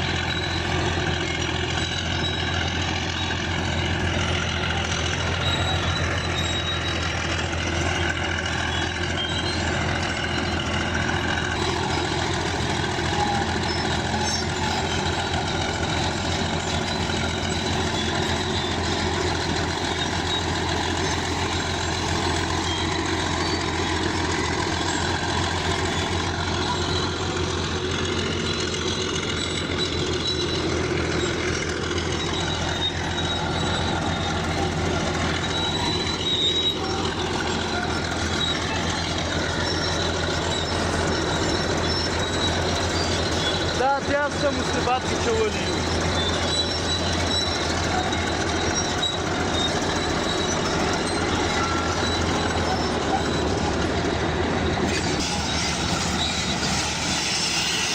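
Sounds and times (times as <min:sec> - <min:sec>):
bulldozer diesel engine running: 0:00.0 - 0:57.9.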